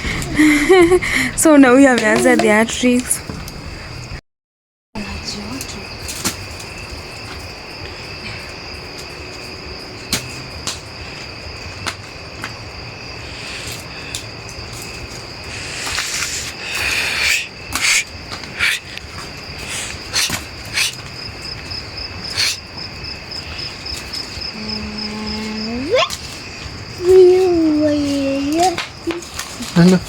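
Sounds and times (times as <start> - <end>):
crickets trilling: 0.0 - 4.2, 5.0 - 30.0
noisy bursts: 0.0 - 4.2.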